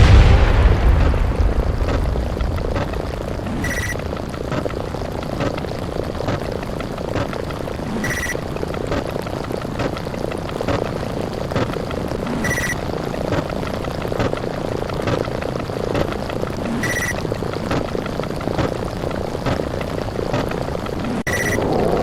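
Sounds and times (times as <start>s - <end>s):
rumbling roar of sound effects: 0.0s - 5.1s, 21.5s - 22.0s
high electronic beep: 3.5s - 4.0s, 8.0s - 8.4s, 12.4s - 12.8s, 16.8s - 17.1s, 21.2s - 21.6s.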